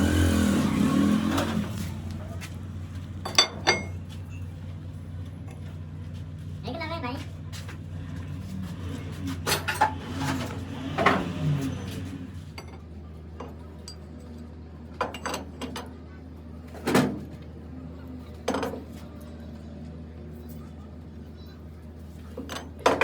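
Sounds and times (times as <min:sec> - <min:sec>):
metal tools clanking: 0:03.2 - 0:04.5.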